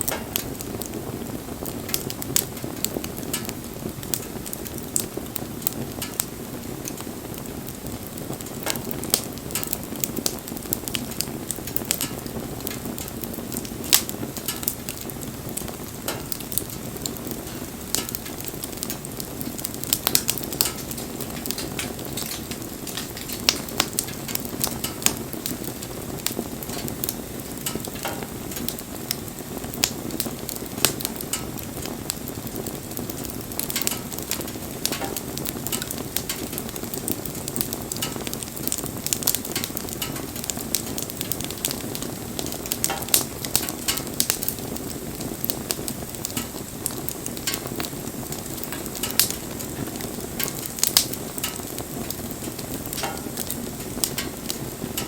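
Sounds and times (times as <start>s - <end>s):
bonfire flames rushing: 0.0s - 55.0s
burning wood crackling and popping: 0.0s - 55.0s.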